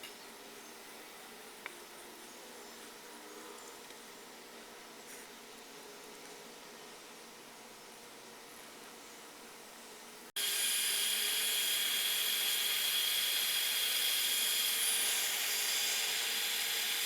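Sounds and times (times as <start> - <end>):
heat gun blowing air: 10.4 - 17.0.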